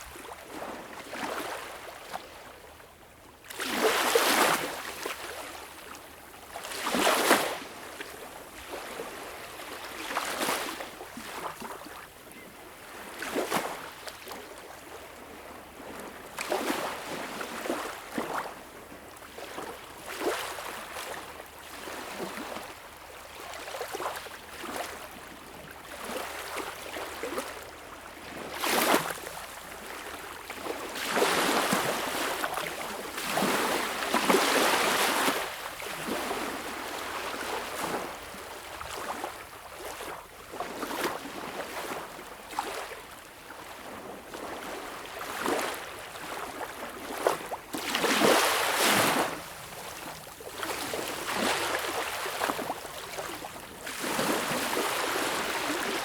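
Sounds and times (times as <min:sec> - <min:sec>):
waves lapping on shore: 0:00.0 - 0:02.8, 0:03.4 - 0:56.0
wave splash: 0:43.8 - 0:56.0.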